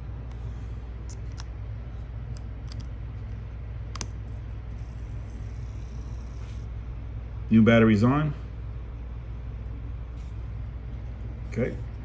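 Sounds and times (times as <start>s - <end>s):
low hum: 0.0s - 12.0s
battery clicking into watch case: 2.4s - 2.9s, 4.0s - 4.2s.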